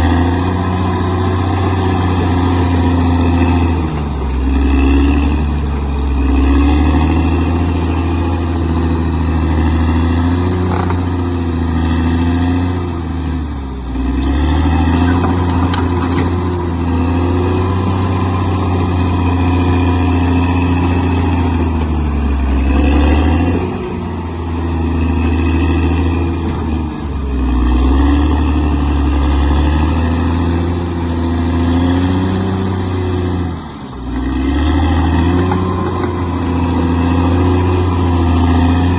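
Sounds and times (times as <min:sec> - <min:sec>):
bulldozer diesel engine: 0:00.0 - 0:38.9.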